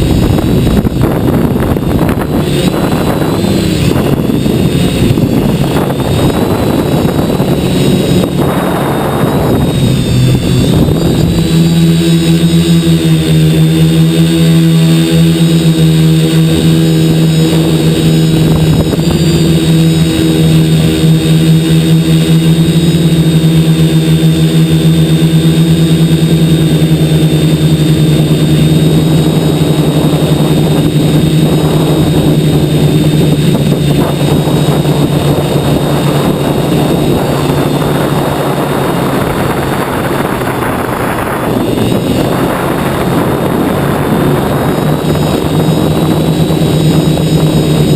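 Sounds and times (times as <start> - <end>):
wind rushing: 0.0 - 13.9, 27.5 - 47.9
quadcopter motors buzzing: 0.0 - 47.9.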